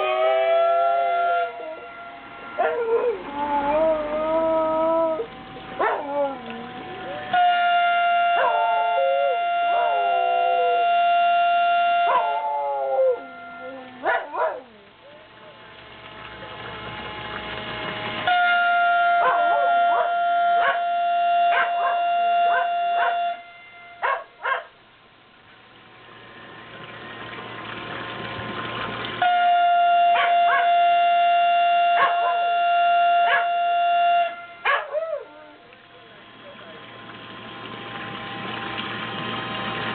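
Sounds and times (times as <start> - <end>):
motor siren blasts: 0.0 - 24.6, 29.2 - 39.9
dog howling and yelping: 2.6 - 7.3, 12.1 - 15.4.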